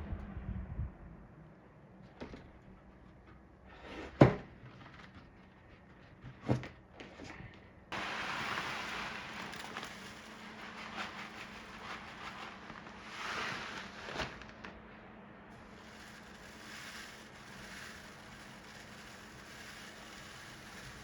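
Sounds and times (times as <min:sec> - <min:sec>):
small fan running: 0:07.9 - 0:21.0.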